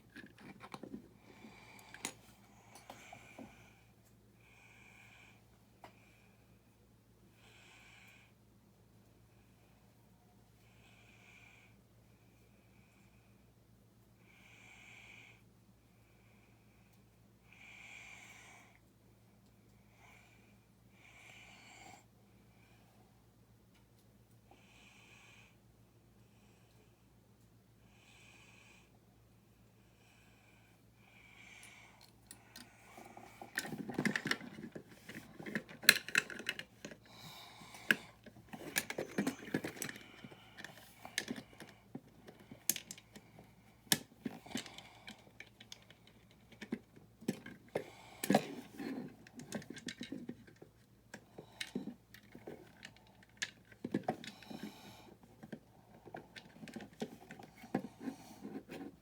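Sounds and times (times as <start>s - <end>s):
plastic bricks clicking and rattling: 32.5s - 37.1s, 37.7s - 43.2s.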